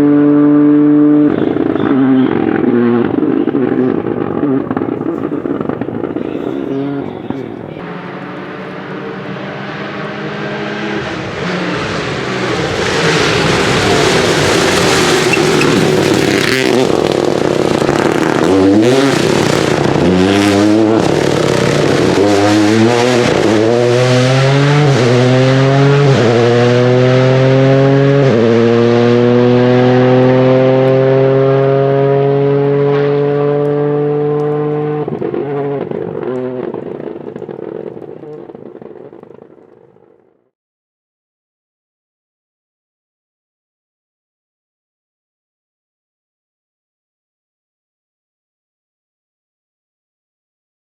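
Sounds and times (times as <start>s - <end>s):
rally car engine accelerating: 0.0s - 39.7s
engine crackles: 0.1s - 40.4s.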